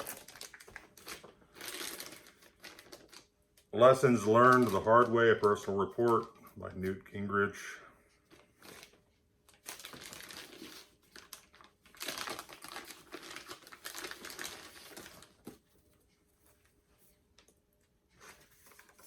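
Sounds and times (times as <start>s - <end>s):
book pages rustling: 4.0s - 6.4s, 8.3s - 19.0s.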